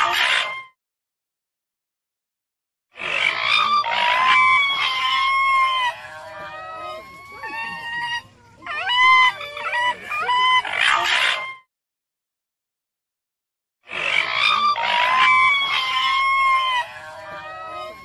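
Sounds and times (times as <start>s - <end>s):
raspy animal calls: 0.0s - 0.7s, 3.0s - 11.7s, 13.9s - 18.0s
raccoon dog whining calls: 0.0s - 0.8s, 3.0s - 11.7s, 14.0s - 18.0s.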